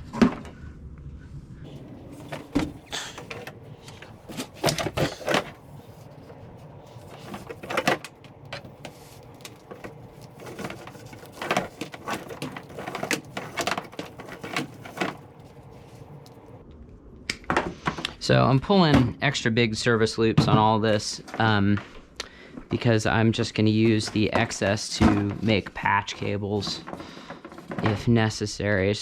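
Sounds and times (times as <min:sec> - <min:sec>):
cables rustling and scraping: 0:01.6 - 0:16.6.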